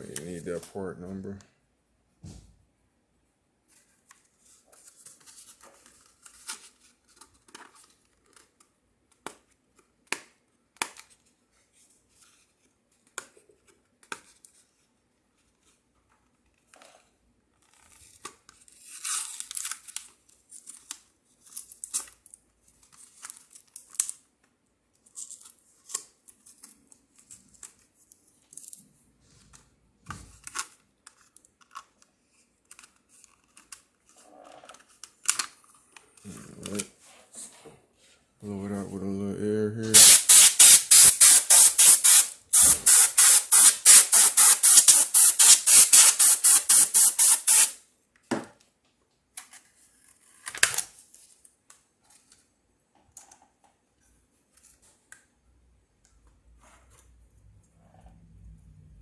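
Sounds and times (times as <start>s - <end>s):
low thump: 2.2s - 2.6s
plastic packaging crinkling and clicking: 30.3s - 36.9s.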